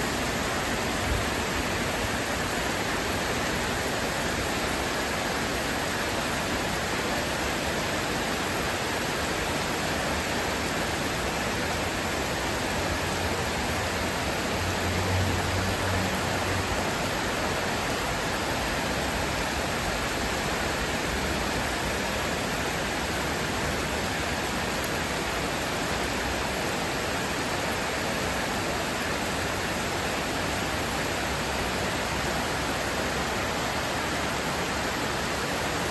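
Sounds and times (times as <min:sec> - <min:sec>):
heavy rain falling: 0:00.0 - 0:35.9.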